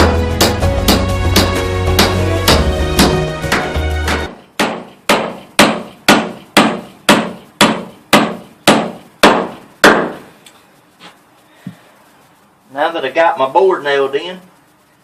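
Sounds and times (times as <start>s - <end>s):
hammer driving nail into wood: 3.5s - 10.2s.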